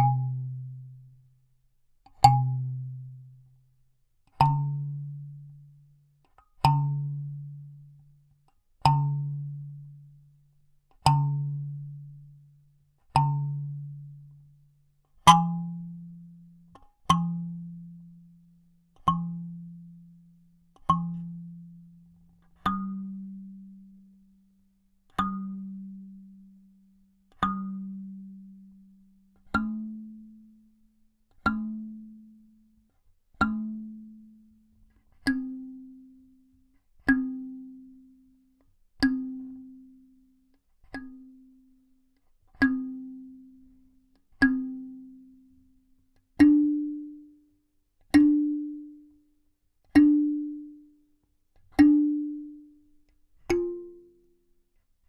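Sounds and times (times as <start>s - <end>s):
kalimba notes plucked: 0.0s - 0.4s.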